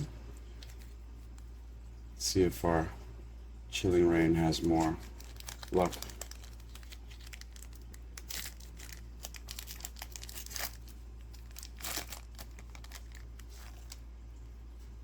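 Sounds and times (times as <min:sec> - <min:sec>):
foil wrapper crinkling and tearing: 0:00.4 - 0:01.5, 0:04.4 - 0:14.1.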